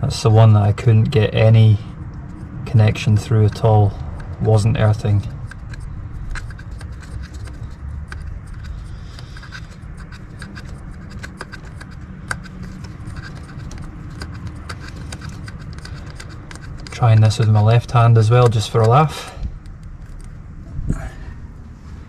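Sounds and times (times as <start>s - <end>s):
steady low rumble: 0.0s - 22.0s
light clicks and scrapes: 0.5s - 20.8s.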